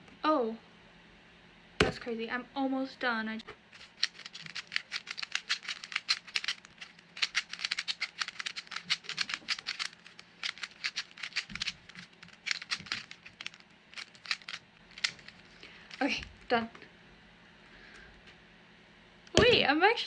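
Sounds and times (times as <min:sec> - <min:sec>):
puzzle cube plastic layers clicking: 0:03.8 - 0:16.0.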